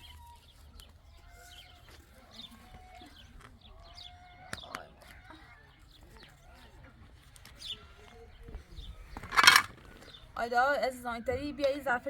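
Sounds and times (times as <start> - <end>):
faint bird chirps and calls: 0.0 - 12.0.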